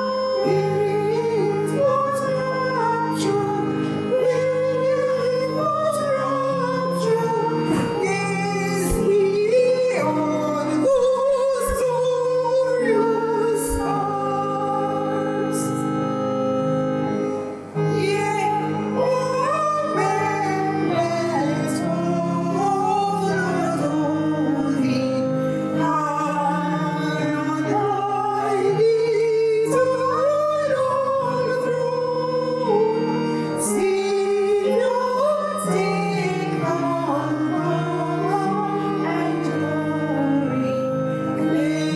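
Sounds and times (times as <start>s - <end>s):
woman singing slow song: 0.0s - 15.9s, 17.9s - 25.2s
instrumental accompaniment: 0.0s - 41.9s.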